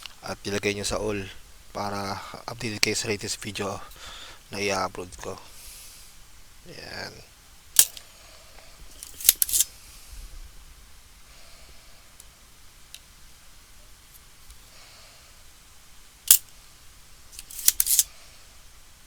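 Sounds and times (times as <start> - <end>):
quiet handling: 0.0 - 14.6
hand tools clicking and snapping: 7.8 - 8.1, 8.9 - 9.7, 16.3 - 16.6, 17.3 - 18.1.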